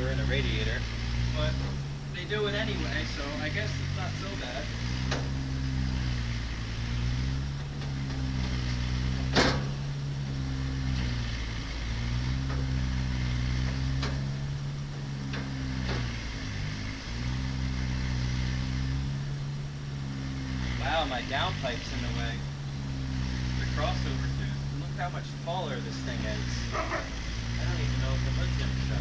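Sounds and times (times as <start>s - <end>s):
low motor drone: 0.0s - 29.0s
sharp clicks and knocks: 5.0s - 5.4s, 7.6s - 9.8s, 13.6s - 14.3s, 15.2s - 16.2s.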